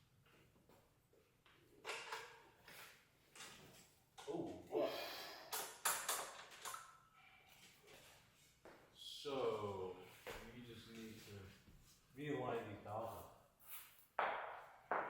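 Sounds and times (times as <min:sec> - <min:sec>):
person exclaiming: 0:04.3 - 0:05.4.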